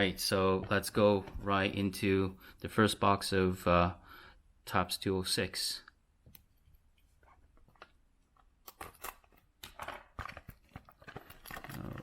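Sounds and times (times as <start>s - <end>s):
crackling clicks and rustles: 7.0s - 12.0s
packaging being torn: 8.6s - 12.0s.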